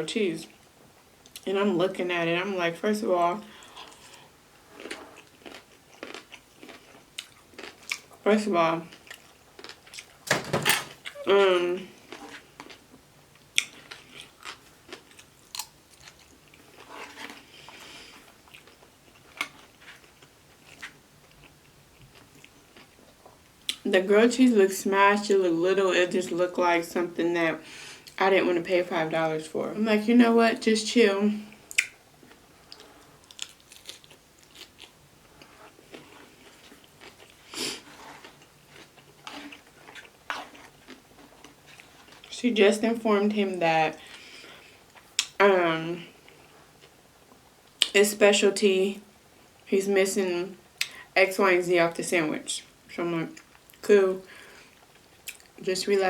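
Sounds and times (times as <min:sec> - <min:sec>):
chewing and crunching food: 0:03.5 - 0:10.2, 0:11.0 - 0:23.9, 0:31.4 - 0:42.4.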